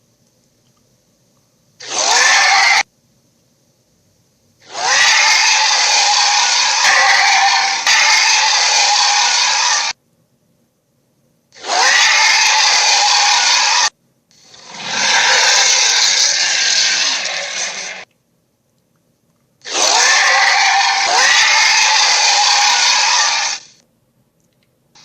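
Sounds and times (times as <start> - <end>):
harsh raspy toy dragon roar: 1.8 - 2.8, 4.6 - 9.9, 11.6 - 13.9, 14.5 - 18.0, 19.6 - 23.7.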